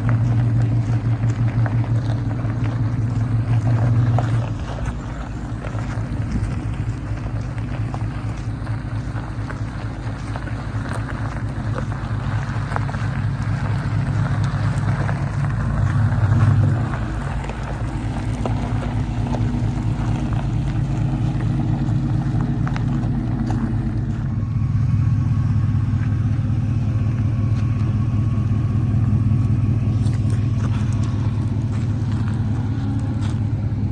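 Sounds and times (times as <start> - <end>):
vehicle engine droning: 0.0 - 33.9.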